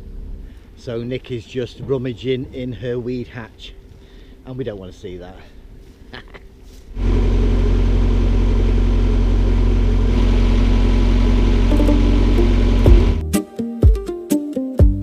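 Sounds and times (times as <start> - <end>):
diesel engine humming: 7.0 - 13.2.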